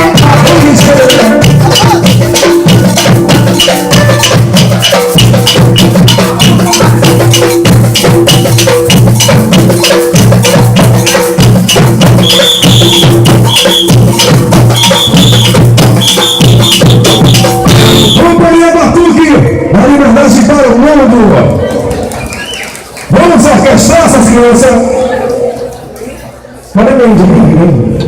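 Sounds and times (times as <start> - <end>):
samba drums and shakers: 0.0 - 18.3, 21.6 - 26.3
short high notes: 12.2 - 18.4.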